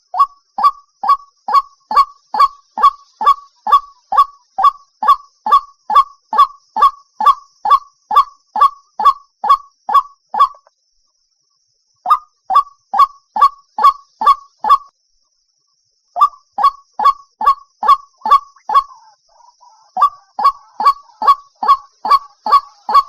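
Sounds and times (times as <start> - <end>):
waterhen calling: 0.0 - 10.6, 16.2 - 23.0.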